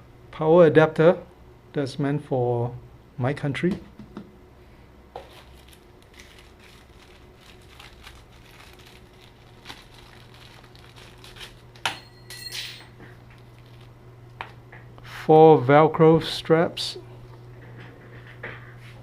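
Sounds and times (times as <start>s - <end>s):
steady low hum: 0.0s - 19.0s
plastic packaging crinkling: 5.2s - 11.9s, 13.1s - 14.0s.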